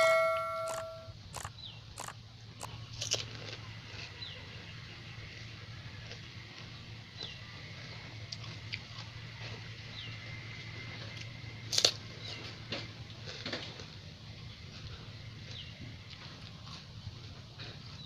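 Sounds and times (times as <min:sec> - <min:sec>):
high falling chirp: 0:00.0 - 0:01.1
steady low hum: 0:00.0 - 0:18.0
crisp food crunch: 0:00.7 - 0:18.0.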